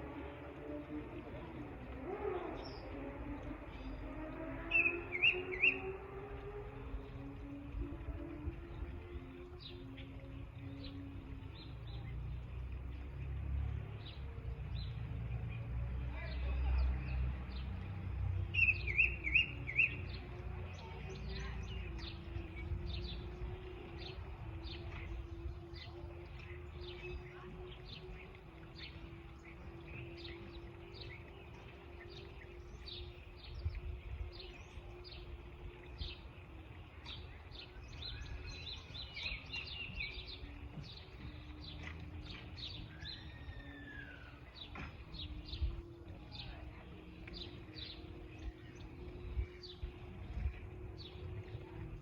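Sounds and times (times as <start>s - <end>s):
low outdoor rumble: 0.0s - 52.0s
songbirds chirping: 0.0s - 52.0s
steady low hum: 0.0s - 52.0s
bird whistle: 4.7s - 6.0s.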